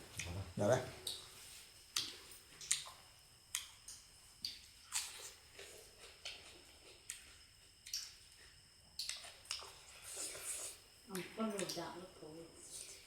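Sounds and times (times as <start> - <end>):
person chewing and biting food: 2.0 - 10.9.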